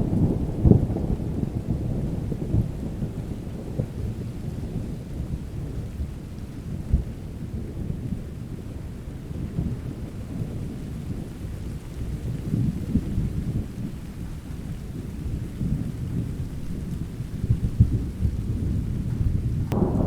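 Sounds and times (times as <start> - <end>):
thunder rumbling: 0.0 - 8.4, 14.9 - 20.0
steady rain: 0.0 - 20.0
sharp thunder crack: 19.5 - 20.0.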